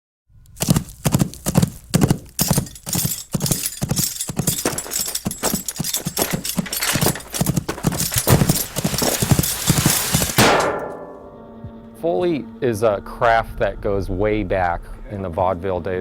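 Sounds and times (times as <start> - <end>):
horse hooves clip-clopping: 0.6 - 10.6.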